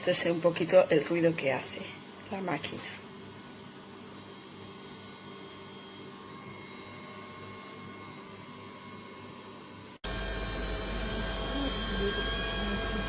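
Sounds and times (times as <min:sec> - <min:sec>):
ice cream maker humming: 0:03.9 - 0:13.0.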